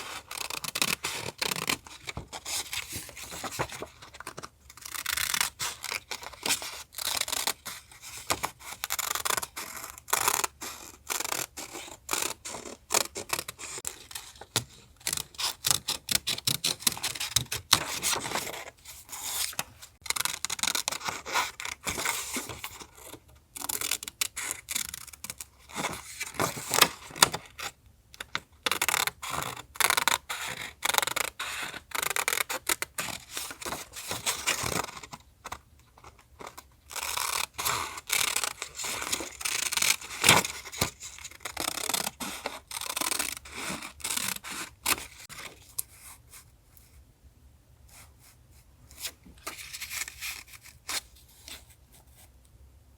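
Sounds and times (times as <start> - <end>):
paper rustling and scraping: 0.0 - 6.7, 16.4 - 20.0, 48.9 - 52.3.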